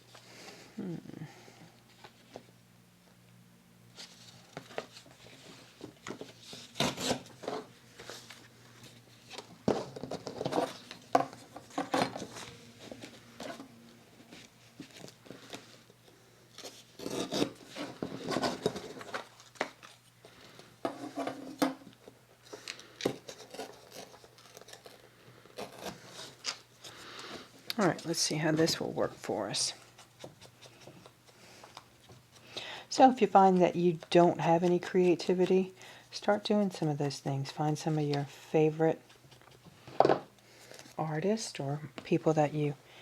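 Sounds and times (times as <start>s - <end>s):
paper rustling and crinkling: 3.9s - 32.5s.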